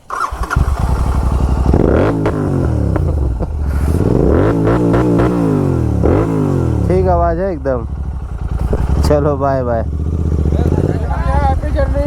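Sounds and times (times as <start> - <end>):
motorcycle engine revving: 0.0 - 12.0
exhaust pops and crackles: 1.6 - 4.2, 8.4 - 9.9.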